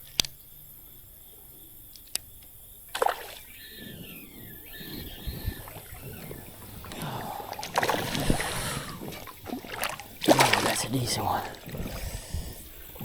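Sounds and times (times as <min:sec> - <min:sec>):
sharp splash: 0:02.9 - 0:03.4, 0:06.9 - 0:12.4
water splashing and sloshing: 0:02.9 - 0:13.0.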